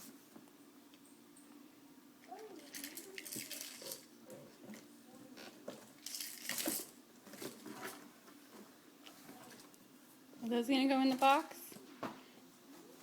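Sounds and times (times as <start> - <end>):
toys clicking and clattering: 2.3 - 4.1, 6.0 - 7.6.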